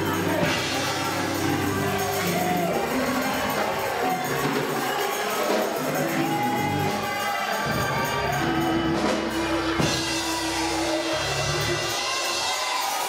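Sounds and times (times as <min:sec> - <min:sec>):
gospel choir singing: 0:00.0 - 0:13.0
instrumental accompaniment: 0:00.0 - 0:13.0
low bass notes: 0:07.7 - 0:11.9.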